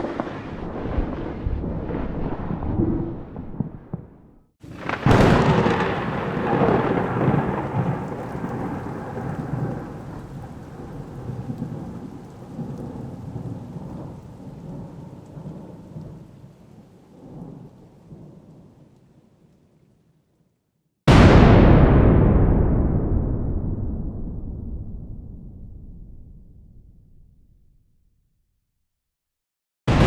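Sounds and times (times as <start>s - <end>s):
lightning crack: 0.0s - 16.2s, 21.1s - 27.2s
rolling rumble of thunder: 0.0s - 19.0s, 21.1s - 27.4s.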